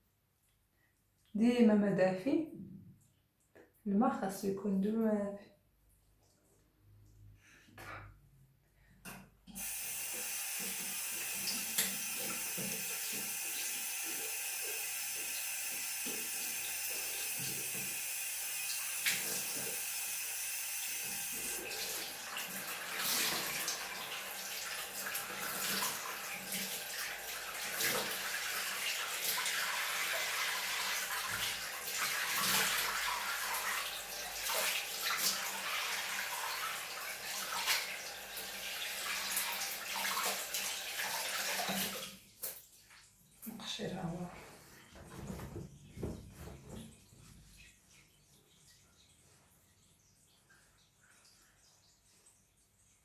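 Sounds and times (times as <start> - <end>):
tap running into sink: 9.1 - 18.0.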